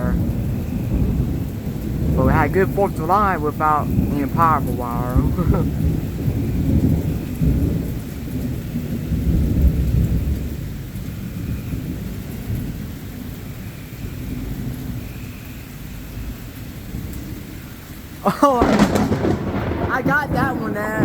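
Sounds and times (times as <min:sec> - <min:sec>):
thunder rumbling: 0:00.0 - 0:13.3, 0:18.3 - 0:21.0
steady rain: 0:00.0 - 0:21.0.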